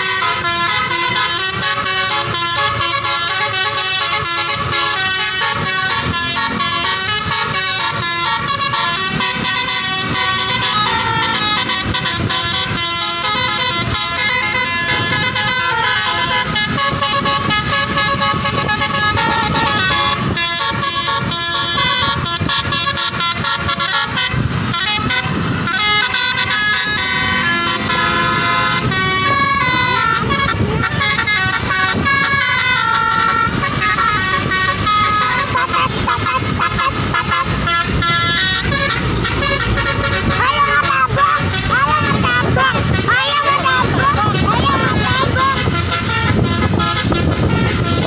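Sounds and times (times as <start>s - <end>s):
multi-tone air horn melody: 0.0s - 48.0s.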